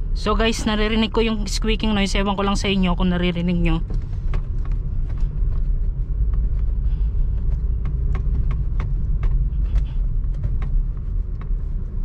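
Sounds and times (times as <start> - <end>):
car engine and road rumble: 0.0 - 12.0.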